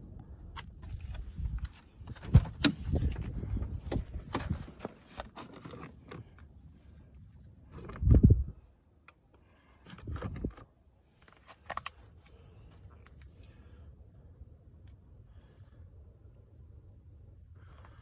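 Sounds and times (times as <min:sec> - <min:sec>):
camera handling clicks and scrapes: 0:11.2 - 0:12.4.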